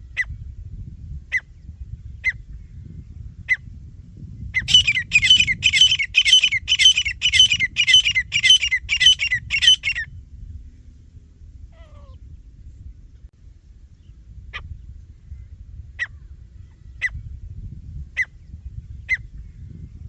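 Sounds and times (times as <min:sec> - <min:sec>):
francolin harsh ringing calls: 0:04.6 - 0:10.0.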